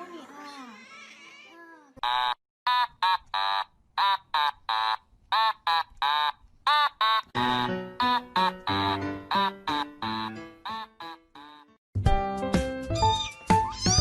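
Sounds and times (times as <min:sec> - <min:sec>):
cheerful background music: 0:07.4 - 0:14.0.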